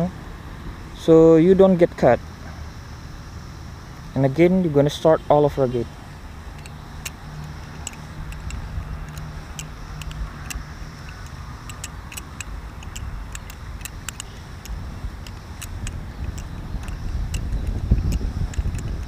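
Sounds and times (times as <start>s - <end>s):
low steady rumble: 0.0s - 19.0s
butterfly knife handles clicking: 6.5s - 19.0s.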